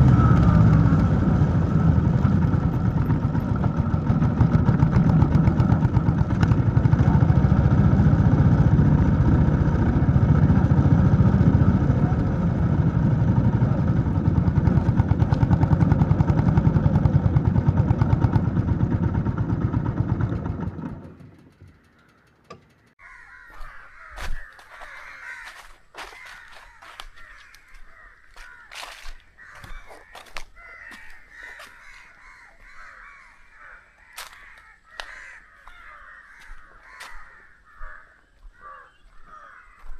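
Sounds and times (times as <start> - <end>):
motorcycle engine idling: 0.0 - 24.4
birds calling: 21.1 - 39.9.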